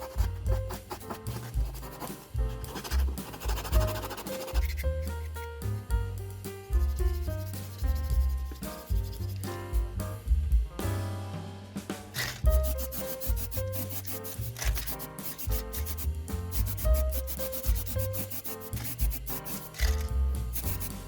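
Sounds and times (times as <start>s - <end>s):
sanding strokes: 0.0s - 5.3s, 6.8s - 9.4s, 12.2s - 21.0s
background music: 0.0s - 21.0s.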